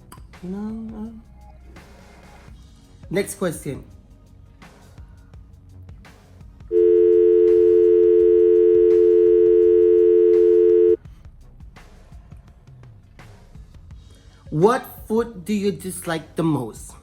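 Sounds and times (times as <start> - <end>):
telephone dial tone: 6.7 - 11.0.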